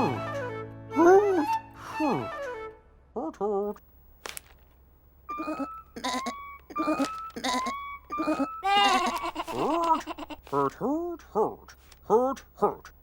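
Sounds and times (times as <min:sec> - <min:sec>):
cartoon lamb bleating: 0:05.3 - 0:10.7.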